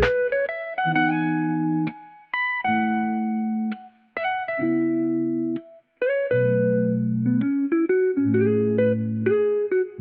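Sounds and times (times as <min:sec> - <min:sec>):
plucked guitar-like chords: 0:00.0 - 0:05.2.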